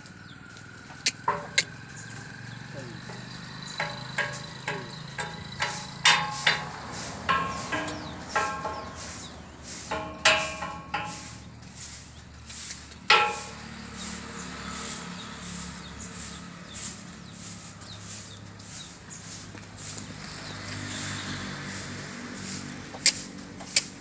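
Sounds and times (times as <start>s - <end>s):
sharp knocks and clicks: 1.0s - 2.2s, 3.0s - 9.2s, 9.9s - 11.4s, 13.0s - 13.7s.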